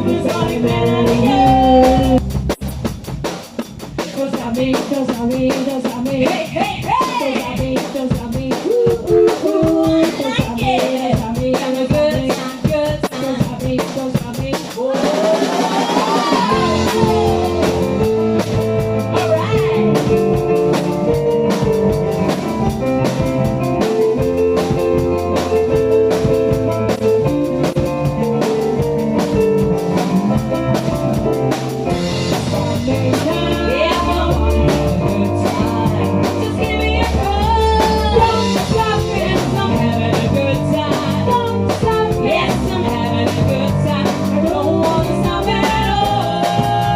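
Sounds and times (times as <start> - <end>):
person singing: 0.0 - 2.2, 4.1 - 18.2, 32.6 - 46.9
drum-kit beat: 0.0 - 46.9.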